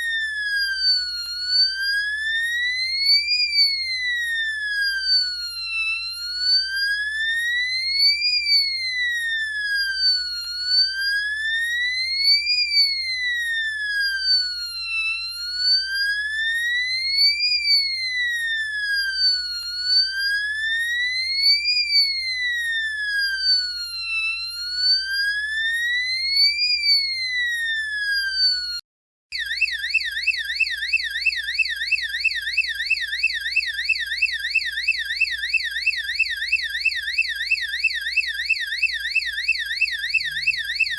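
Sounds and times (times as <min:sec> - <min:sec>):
electronic siren wail: 0:00.0 - 0:40.9
electronic siren yelp: 0:00.0 - 0:40.9.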